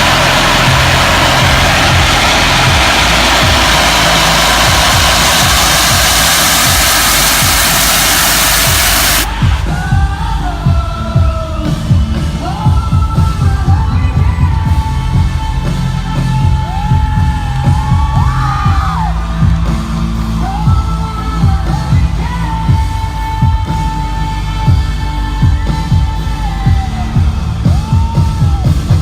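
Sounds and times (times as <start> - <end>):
crowd yelling: 0.0 - 10.0, 16.6 - 21.0
live pop music: 0.0 - 29.0.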